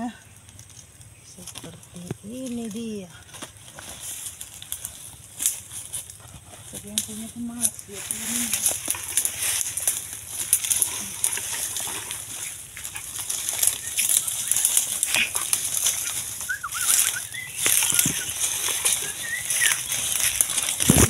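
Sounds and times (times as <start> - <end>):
leaf litter rustling: 0.2 - 21.0
bird wavering whistles: 13.6 - 15.1, 15.8 - 20.3.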